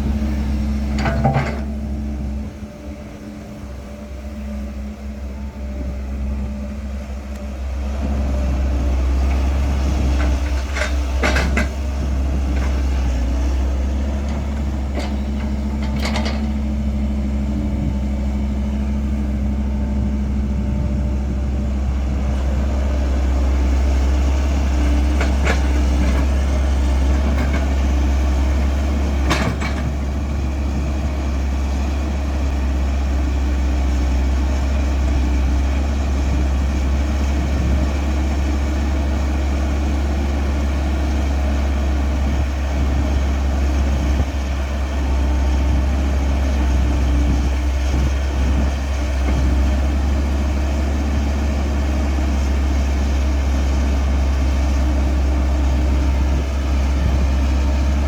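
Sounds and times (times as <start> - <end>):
excavator diesel engine running: 0.0 - 58.0.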